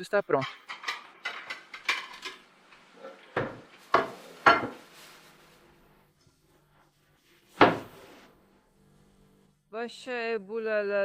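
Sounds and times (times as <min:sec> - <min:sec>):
kitchenware knocking and clinking: 0:00.4 - 0:04.9.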